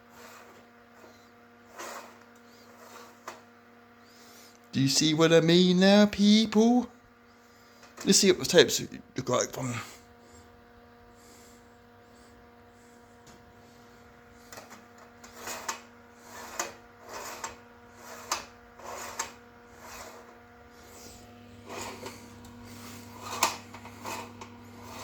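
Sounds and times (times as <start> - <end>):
slide projector humming: 18.0 - 25.0.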